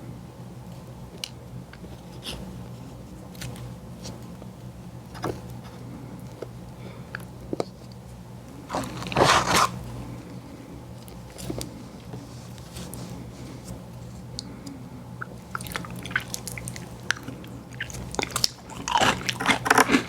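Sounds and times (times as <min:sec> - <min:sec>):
steady low hum: 0:00.0 - 0:20.0
crunchy bite of ice cream: 0:15.2 - 0:20.0.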